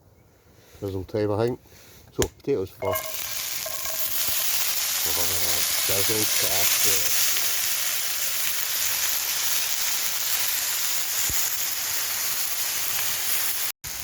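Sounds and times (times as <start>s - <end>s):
potatoes sizzling in oil: 2.8s - 14.0s.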